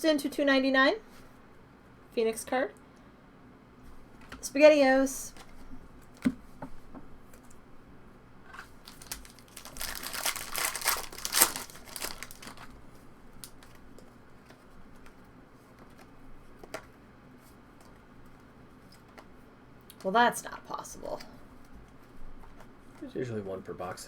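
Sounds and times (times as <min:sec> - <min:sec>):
foil wrapper crinkling and tearing: 0:08.8 - 0:13.8.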